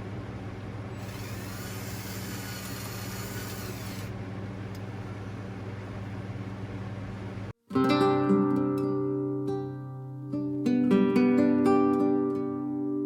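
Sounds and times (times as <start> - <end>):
low engine-like hum: 0.0 - 7.6.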